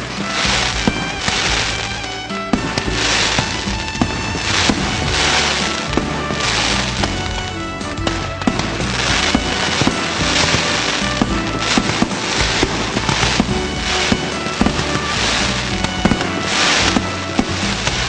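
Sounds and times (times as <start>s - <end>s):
background music: 0.0s - 18.0s
fireworks bangs: 0.0s - 18.0s
fireworks crackling hiss: 0.0s - 18.0s.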